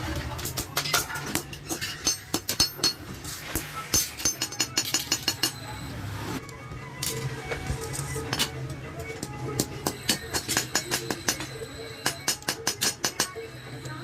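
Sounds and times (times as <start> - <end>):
hammer tapping sheet metal: 0.5 - 5.6, 9.6 - 13.4.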